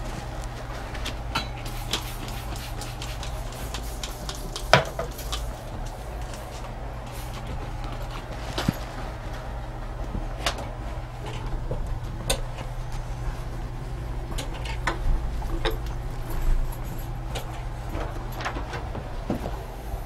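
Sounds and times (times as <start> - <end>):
low hum: 0.0 - 20.0.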